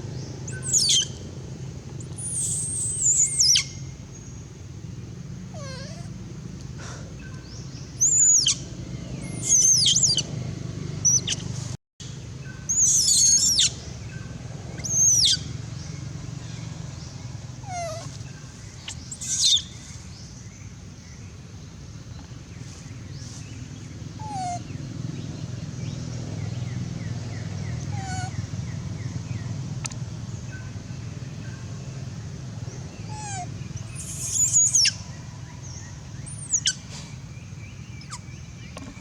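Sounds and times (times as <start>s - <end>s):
steady low hum: 0.0s - 39.0s
baby monkey squealing cries: 0.5s - 1.2s, 2.2s - 3.8s, 5.6s - 6.1s, 8.0s - 8.6s, 9.3s - 10.3s, 11.0s - 11.5s, 12.7s - 13.8s, 14.8s - 15.4s, 18.9s - 19.7s, 24.2s - 24.6s, 27.9s - 28.4s, 33.1s - 35.0s, 36.3s - 36.8s.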